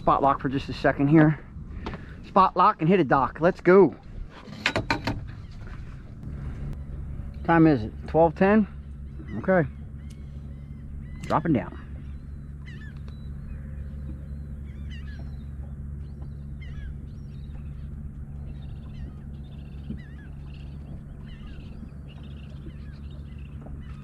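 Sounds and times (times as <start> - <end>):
low motor hum: 0.0 - 24.0
birds chirping: 4.9 - 24.0.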